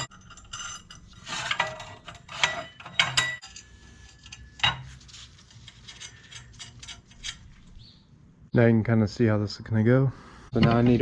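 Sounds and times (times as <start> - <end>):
metal parts clinking and rattling: 0.0 - 7.8.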